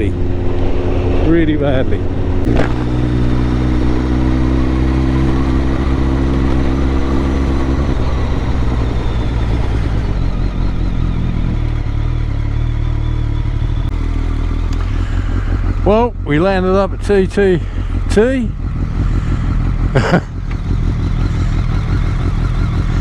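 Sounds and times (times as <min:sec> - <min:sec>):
wind noise: 0:00.0 - 0:11.9
motorcycle engine running: 0:00.0 - 0:23.0.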